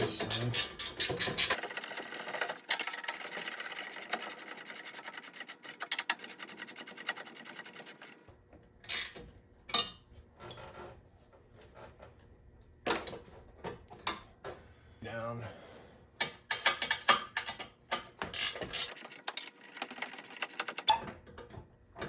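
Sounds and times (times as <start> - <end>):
ratchet wrench clicking: 1.4 - 8.2, 18.4 - 21.0.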